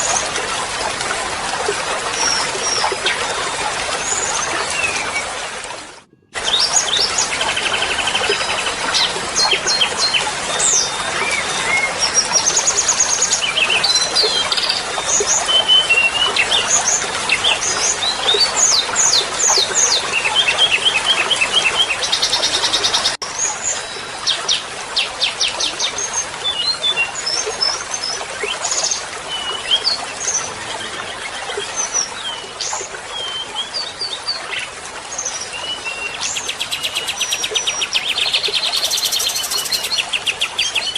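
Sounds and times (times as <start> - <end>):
songbirds chirping and trilling: 24.5 - 40.9.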